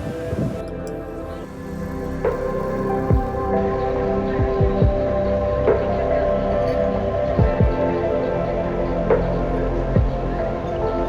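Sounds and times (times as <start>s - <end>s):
sustained chords: 0.0s - 11.0s
deep falling bass hits: 2.2s - 11.0s.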